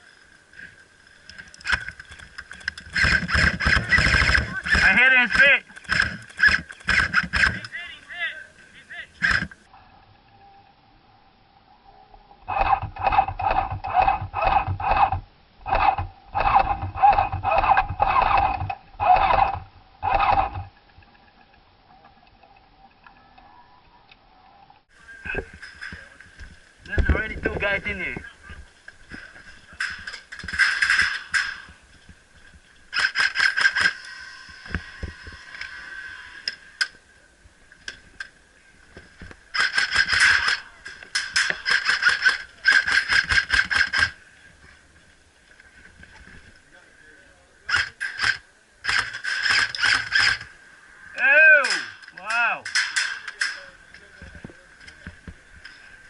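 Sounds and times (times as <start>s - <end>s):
airsoft gun firing bursts: 2.9s - 7.6s, 32.9s - 34.0s, 41.4s - 44.2s.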